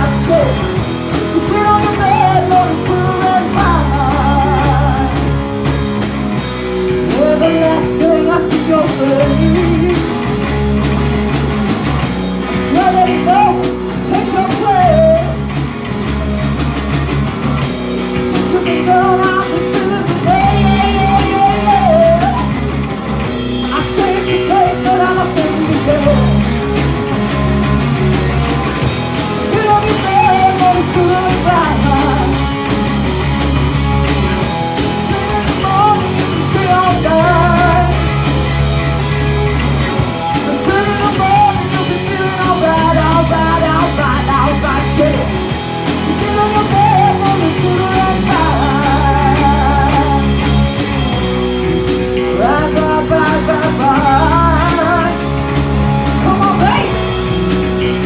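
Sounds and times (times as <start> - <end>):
person singing: 0.0 - 5.8, 6.9 - 11.8, 12.4 - 15.8, 18.0 - 22.6, 23.4 - 27.0, 28.6 - 33.2, 34.8 - 38.5, 40.2 - 50.8, 52.1 - 57.2
bass guitar: 0.0 - 58.0
electric guitar: 0.0 - 58.0
rock drums: 0.0 - 58.0.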